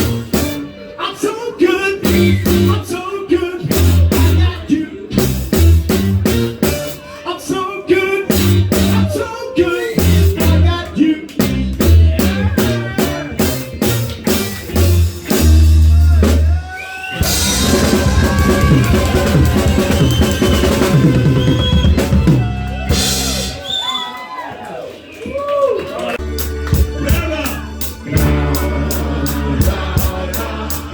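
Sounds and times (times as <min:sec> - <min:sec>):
live band playing: 0:00.0 - 0:23.9, 0:26.2 - 0:30.9
person singing: 0:00.9 - 0:05.2, 0:07.1 - 0:13.6, 0:26.7 - 0:30.9
cymbals washing: 0:17.2 - 0:22.2.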